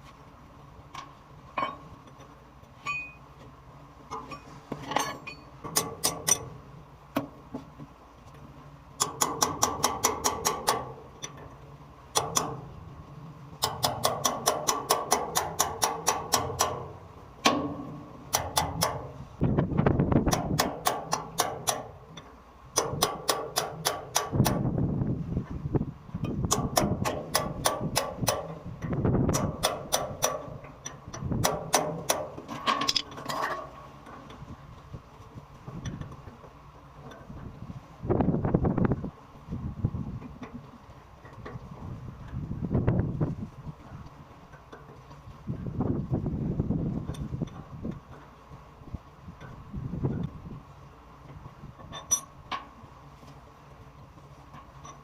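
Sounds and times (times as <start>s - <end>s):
rapid metal-on-metal hammering: 5.3s - 6.5s, 9.0s - 11.0s, 12.1s - 12.6s, 13.6s - 19.2s, 20.2s - 22.0s, 22.7s - 24.7s, 26.4s - 28.6s, 29.3s - 33.0s.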